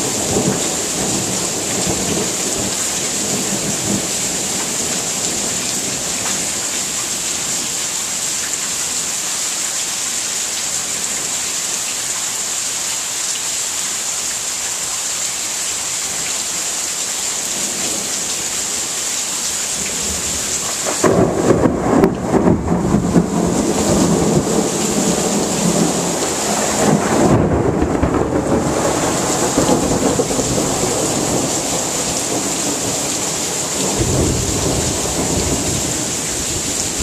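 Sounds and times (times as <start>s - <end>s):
heavy rain falling: 0.0s - 37.0s
loud uneven thunder rumble: 20.0s - 37.0s
low rumble of thunder: 20.0s - 37.0s.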